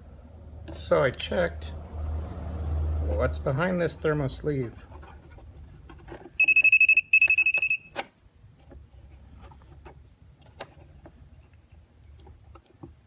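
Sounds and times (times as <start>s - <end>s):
tester beeper buzzing: 6.4s - 7.9s.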